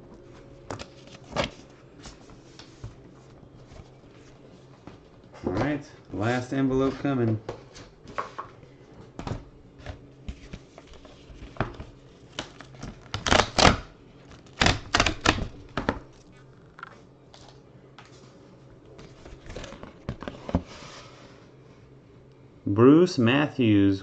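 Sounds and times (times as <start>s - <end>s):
paper envelope rustling: 19.0s - 20.6s.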